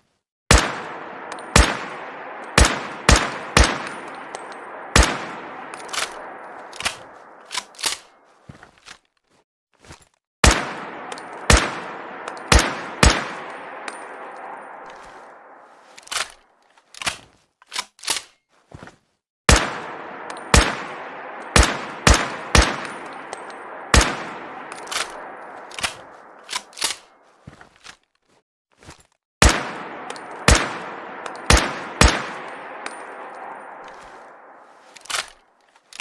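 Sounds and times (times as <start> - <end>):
rifle shot with echoing tail: 0.5 - 8.2, 10.4 - 15.8, 19.5 - 27.2, 29.4 - 35.4.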